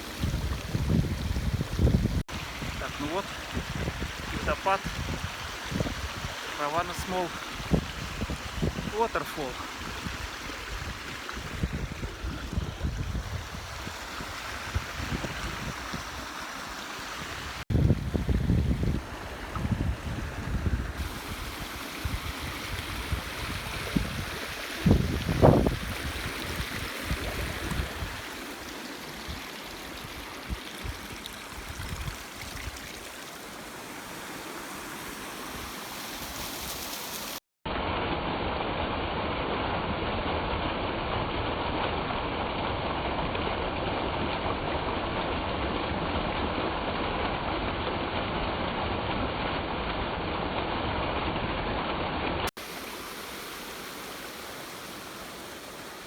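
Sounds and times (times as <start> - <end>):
wind buffeting microphone: 0.0 - 6.4, 7.5 - 9.0, 9.8 - 16.2, 17.2 - 28.4, 29.2 - 32.8
waterfall rushing: 0.0 - 37.4, 52.6 - 56.0.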